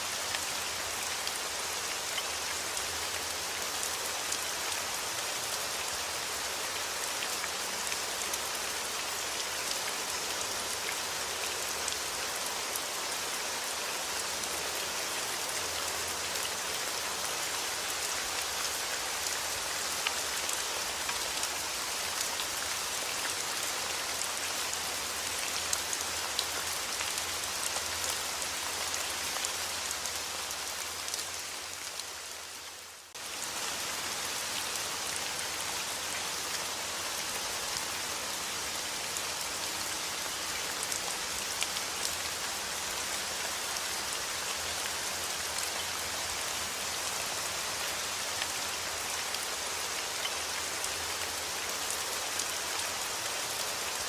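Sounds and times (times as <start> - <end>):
rain pattering on a surface: 0.0 - 54.0.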